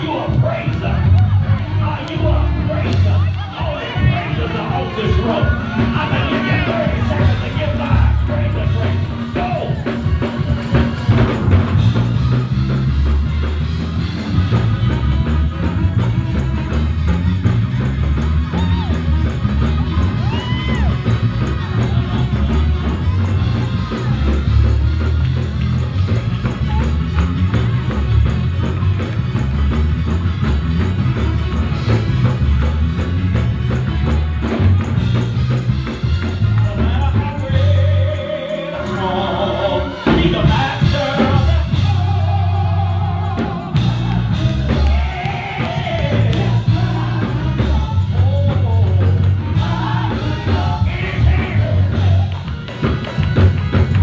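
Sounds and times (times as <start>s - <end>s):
voices singing: 0.0s - 12.8s, 36.4s - 54.0s
gospel music with pulsing bass: 0.0s - 54.0s
tambourine: 4.8s - 54.0s.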